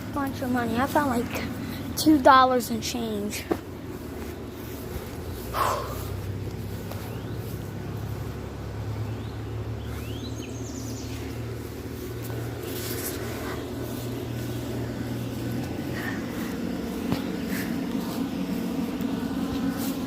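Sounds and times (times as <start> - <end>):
vehicle engine hum: 0.0 - 20.0
bird chirps: 9.0 - 11.4.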